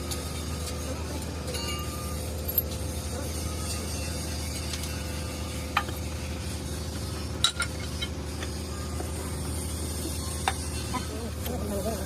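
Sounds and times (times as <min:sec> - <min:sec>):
engine humming: 0:00.0 - 0:12.0.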